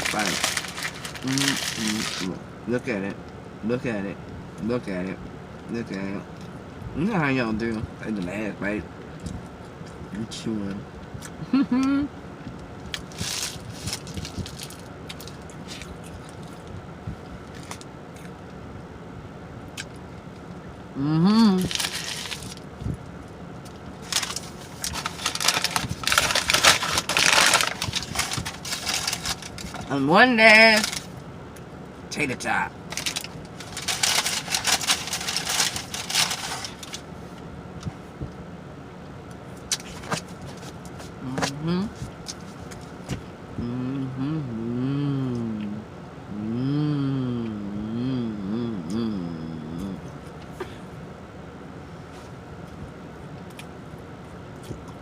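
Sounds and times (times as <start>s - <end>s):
low hum: 0.0s - 55.0s
chewing with wet smacking: 14.2s - 16.8s.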